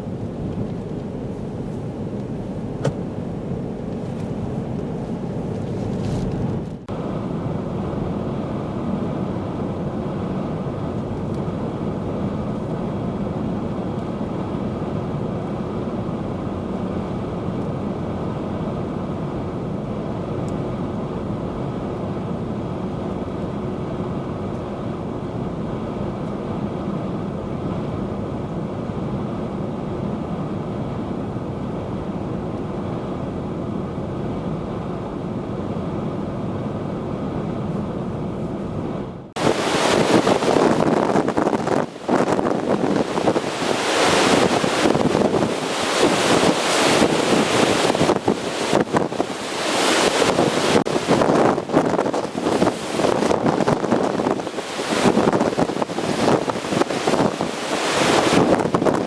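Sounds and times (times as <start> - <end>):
storm wind roaring: 30.5 - 59.0.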